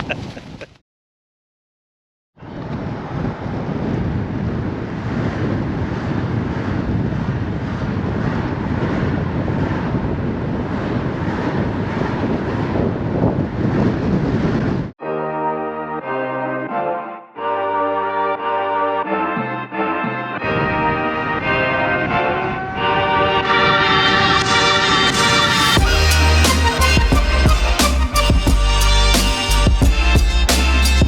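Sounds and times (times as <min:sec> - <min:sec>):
wind on microphone: 0:00.0 - 0:00.8, 0:02.4 - 0:15.0, 0:19.3 - 0:31.0
sea surf: 0:20.5 - 0:25.8.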